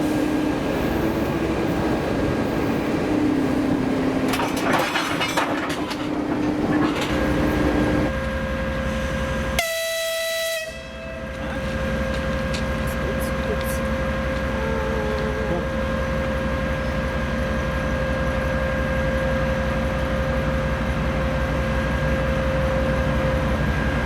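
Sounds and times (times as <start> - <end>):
diesel locomotive engine rumble: 0.0 - 24.0
locomotive horn blast: 8.9 - 11.6.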